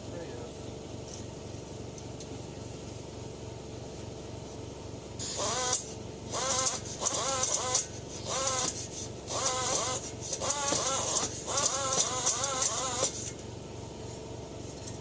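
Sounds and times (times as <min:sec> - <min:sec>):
power hone motor whirring: 0:05.2 - 0:13.4.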